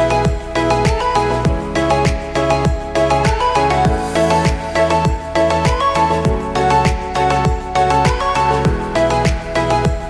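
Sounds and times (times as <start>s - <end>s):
deep kick drum: 0.2s - 10.0s.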